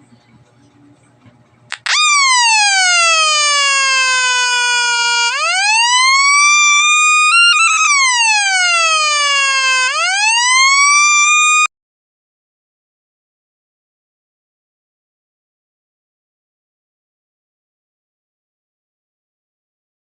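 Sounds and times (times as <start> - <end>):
electronic police siren tone: 1.8 - 11.7.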